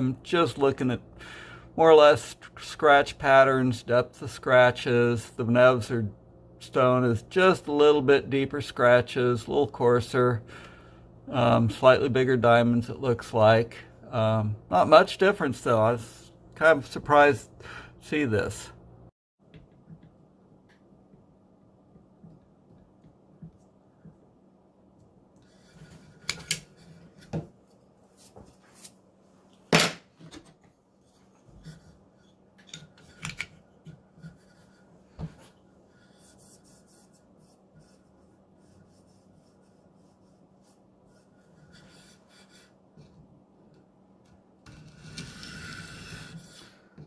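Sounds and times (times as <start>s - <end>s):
stone scraping along blade: 25.4s - 27.4s, 44.7s - 46.9s.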